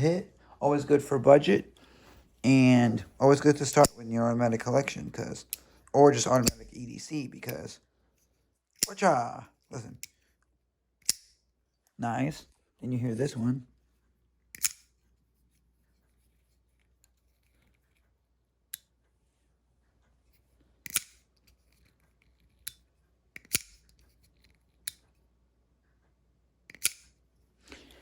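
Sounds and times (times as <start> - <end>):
knife blades snapping open: 26.7 - 27.1.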